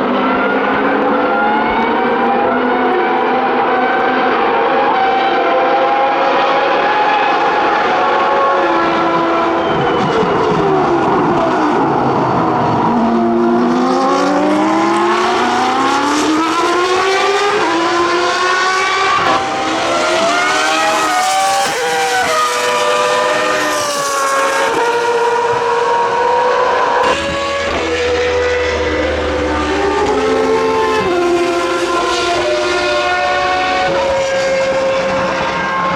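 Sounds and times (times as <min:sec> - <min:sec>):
race car engines accelerating: 0:00.0 - 0:35.9.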